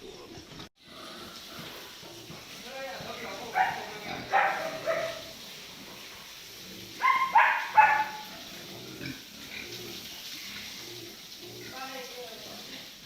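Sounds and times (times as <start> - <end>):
high-pitched animal cries: 7.0 - 8.4.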